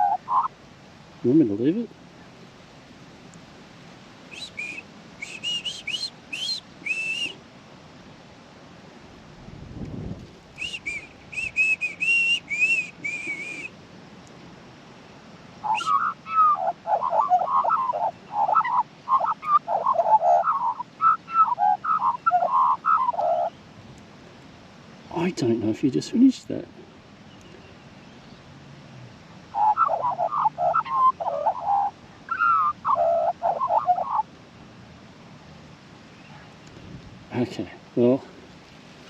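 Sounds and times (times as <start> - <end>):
magpie warbling song: 0.0 - 0.5, 15.6 - 23.6, 29.5 - 34.3
person whistling a tune: 4.4 - 7.3, 10.6 - 13.7.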